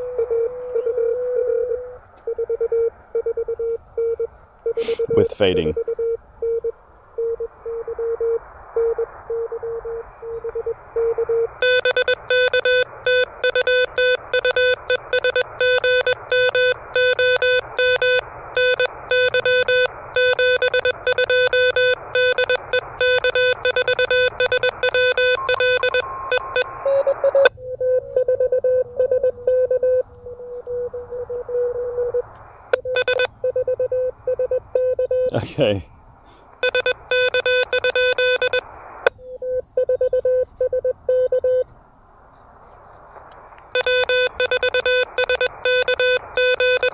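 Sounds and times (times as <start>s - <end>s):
weak morse code tone: 0.0s - 35.4s, 36.6s - 41.7s, 43.8s - 46.9s
receiver hiss: 4.2s - 28.1s, 31.7s - 39.4s, 40.7s - 46.9s
loud harsh morse code tones: 11.2s - 30.6s, 32.8s - 35.4s, 36.6s - 38.7s, 43.8s - 46.9s.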